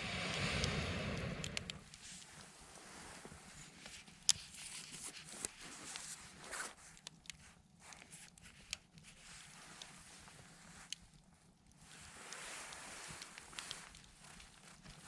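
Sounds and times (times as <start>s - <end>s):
sharp pop from fire: 0.0s - 1.8s
wood fire crackling: 0.0s - 3.4s.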